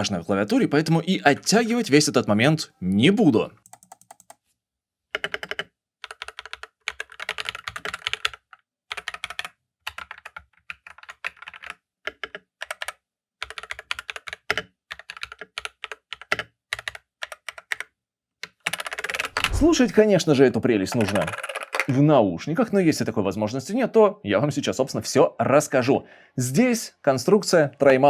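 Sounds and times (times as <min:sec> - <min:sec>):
mechanical keyboard typing: 0:03.6 - 0:04.4, 0:05.1 - 0:19.8, 0:21.0 - 0:21.9.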